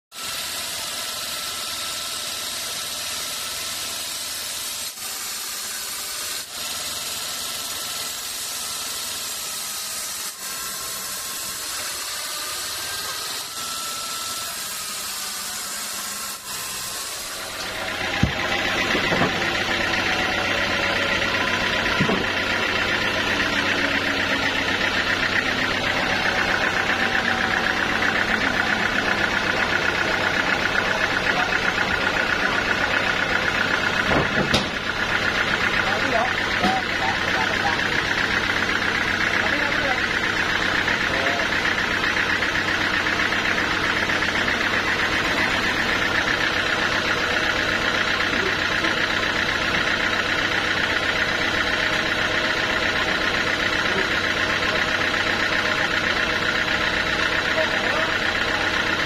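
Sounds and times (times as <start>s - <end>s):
engine running with even pulse: 0.1s - 59.0s
sawmill machinery hiss: 0.1s - 59.0s
sharp knocks: 18.1s - 19.6s, 34.0s - 34.8s.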